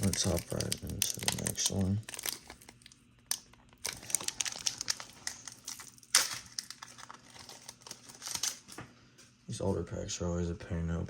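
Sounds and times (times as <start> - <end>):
plastic wrapper crinkling: 0.0 - 8.8
wrapper snapping: 0.0 - 8.8.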